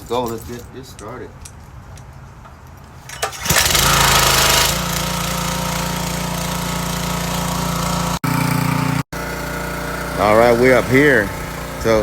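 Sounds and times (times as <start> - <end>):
small engine starting and running: 3.0 - 12.0.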